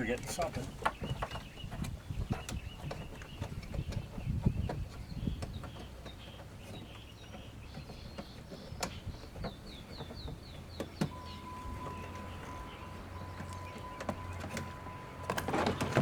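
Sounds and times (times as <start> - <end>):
small birds chirping: 0.0 - 16.0
steady high tone: 11.1 - 16.0.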